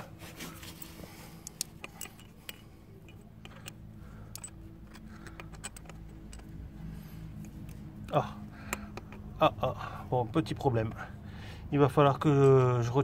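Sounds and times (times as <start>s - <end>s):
faint low hum: 0.0s - 11.6s
metallic clicks of tools: 1.4s - 9.4s.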